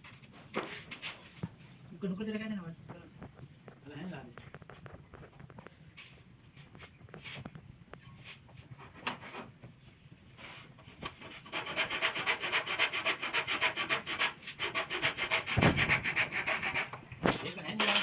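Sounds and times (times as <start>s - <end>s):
hand sanding wood: 10.5s - 17.0s
dull thump: 15.6s - 16.0s.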